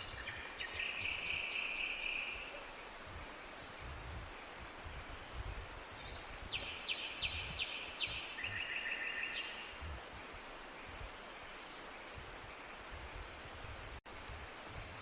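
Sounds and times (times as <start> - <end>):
songbird singing with trill: 0.0 - 2.6, 6.0 - 9.7.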